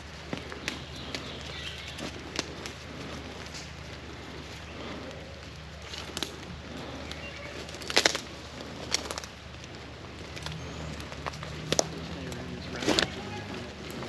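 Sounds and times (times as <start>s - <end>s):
low steady hum: 0.0s - 14.0s
sharp snaps and clicks: 0.2s - 13.2s.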